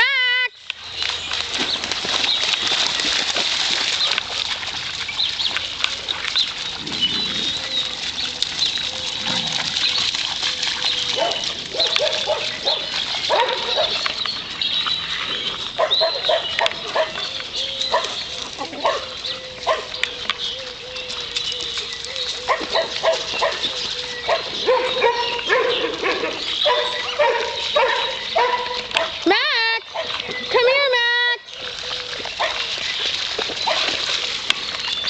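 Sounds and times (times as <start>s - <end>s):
dogs barking: 6.7s - 14.2s, 15.6s - 20.2s, 22.4s - 29.3s, 29.9s - 30.3s, 32.4s - 32.8s, 33.6s - 34.0s.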